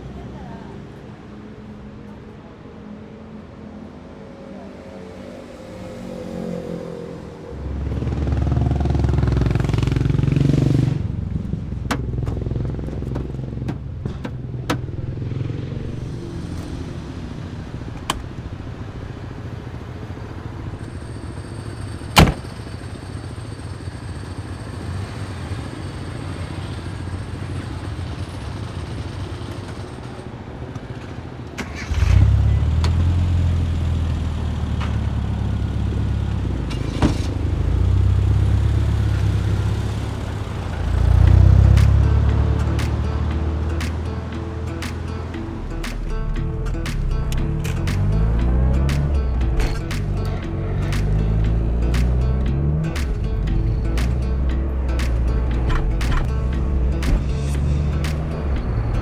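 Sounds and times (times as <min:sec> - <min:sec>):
car engine running: 0:07.8 - 0:30.0, 0:31.6 - 0:59.0
sharp clicks: 0:41.3 - 0:59.0.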